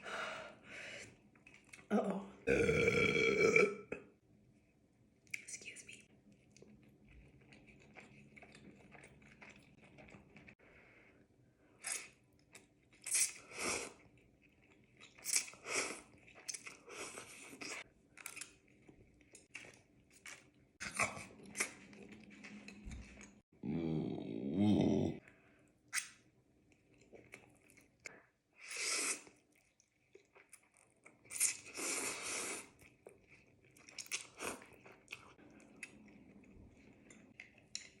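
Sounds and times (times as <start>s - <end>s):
person chewing food: 6.2s - 10.6s, 11.8s - 23.5s, 25.3s - 38.0s.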